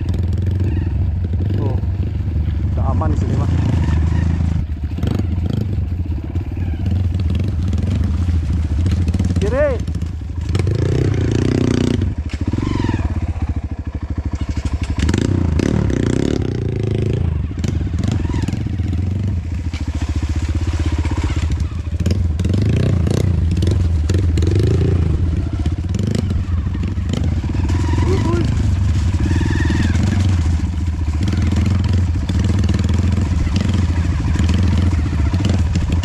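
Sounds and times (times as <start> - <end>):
bike clattering over rough ground: 0.0 - 11.3, 14.0 - 16.6, 17.5 - 36.0
dirt bike engine revving: 0.0 - 36.0.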